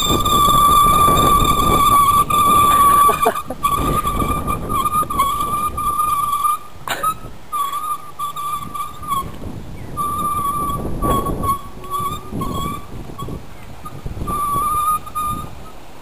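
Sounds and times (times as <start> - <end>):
scooter brake squealing: 0.0 - 9.3
rough rolling rumble: 0.0 - 15.4.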